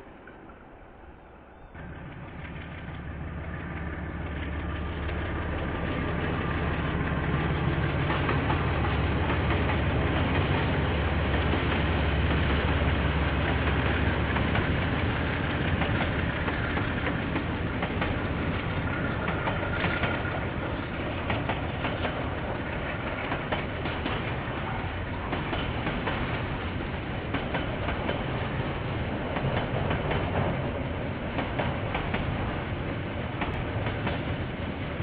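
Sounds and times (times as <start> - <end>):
train wheels clicking over rail joints: 1.8 - 35.0.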